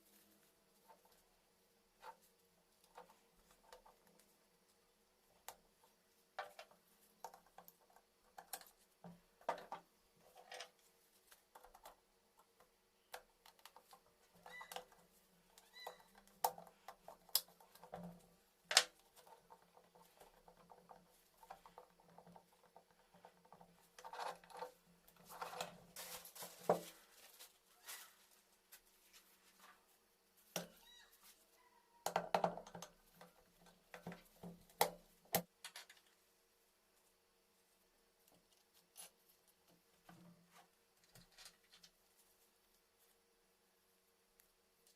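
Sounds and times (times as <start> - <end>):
short rustle: 25.2 - 30.0.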